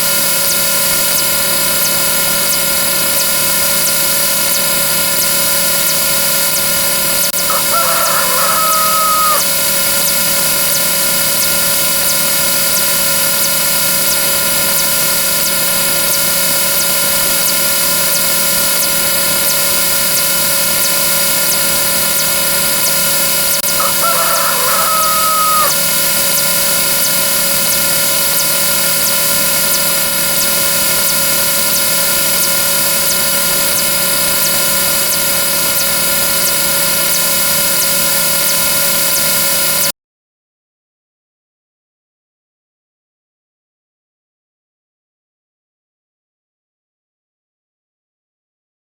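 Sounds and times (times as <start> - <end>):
synthetic held tones: 0.0 - 39.9
rooster crow sound effect: 7.3 - 10.1, 22.8 - 27.7.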